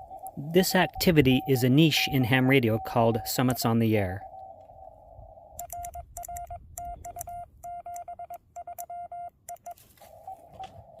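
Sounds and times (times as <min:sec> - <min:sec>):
morse code beeps: 0:00.0 - 0:11.0
sharp keying clicks: 0:05.6 - 0:09.7.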